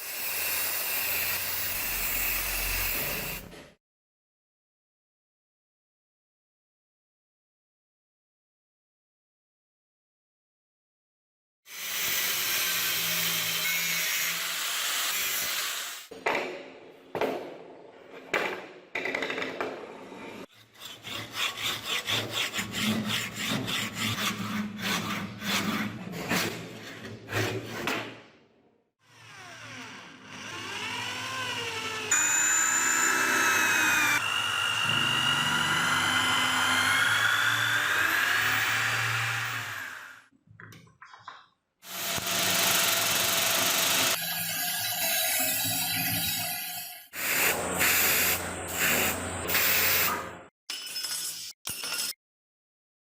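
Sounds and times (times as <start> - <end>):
tool rasping on metal: 20.4 - 27.9
power tool whine: 29.1 - 40.2.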